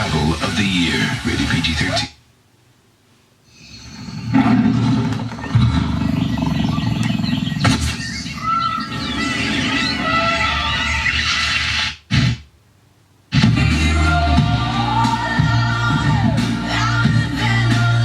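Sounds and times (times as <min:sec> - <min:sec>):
low rumbling: 0:03.6 - 0:08.1
birds chirping: 0:03.9 - 0:10.1.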